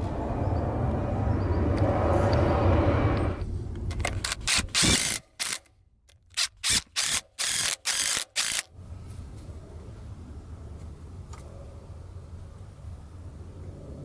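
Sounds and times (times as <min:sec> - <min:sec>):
steady low rumble: 0:00.0 - 0:06.1, 0:08.7 - 0:14.0
ratchet wrench clicking: 0:04.0 - 0:08.7.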